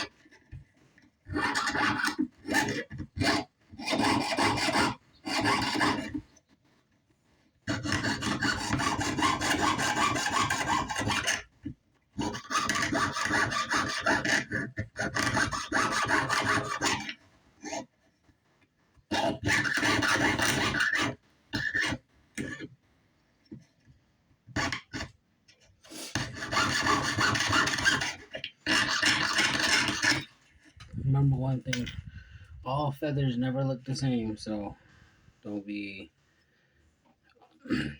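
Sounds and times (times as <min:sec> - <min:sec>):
saw cutting metal sheet: 0:01.3 - 0:06.2, 0:07.7 - 0:11.5, 0:12.2 - 0:17.2, 0:19.1 - 0:22.5, 0:25.9 - 0:30.4.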